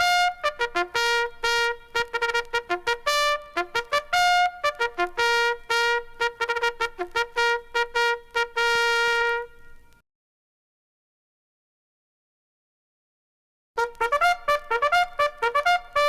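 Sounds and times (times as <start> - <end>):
bugle call: 0.0 - 9.9, 13.8 - 16.0.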